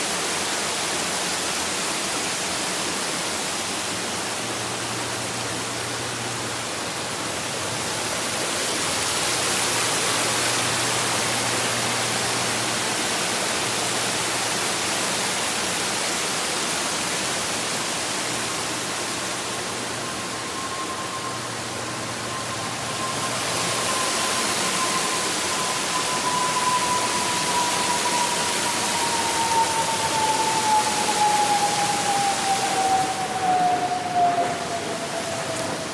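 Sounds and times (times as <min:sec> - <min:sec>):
waterfall rushing: 0:00.0 - 0:35.9
falling drawn-out tone: 0:17.4 - 0:35.9.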